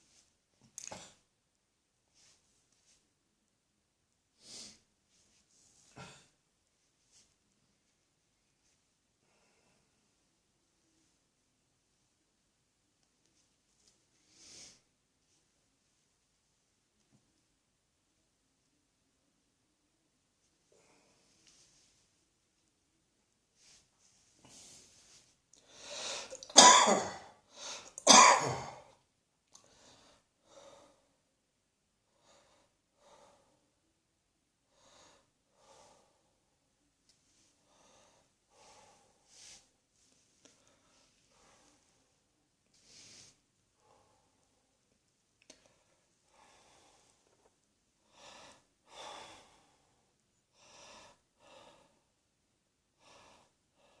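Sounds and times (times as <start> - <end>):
person breathing quietly: 9.2 - 10.2, 14.2 - 14.9, 20.7 - 22.0, 23.6 - 26.4, 27.4 - 28.0, 29.6 - 31.3, 32.1 - 33.9, 34.7 - 36.6, 37.2 - 52.2, 53.0 - 54.0
person coughing: 26.4 - 27.4, 28.0 - 28.9.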